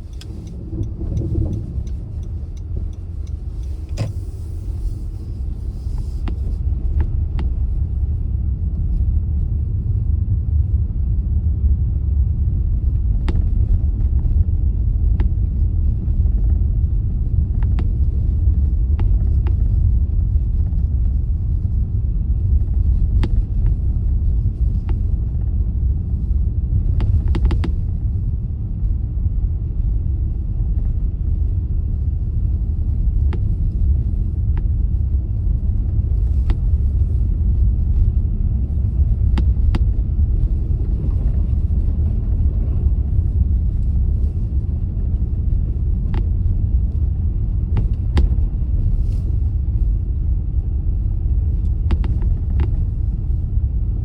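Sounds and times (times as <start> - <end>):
faint ticks and clicks: 0.0 - 4.2
car driving rumble: 0.0 - 54.0.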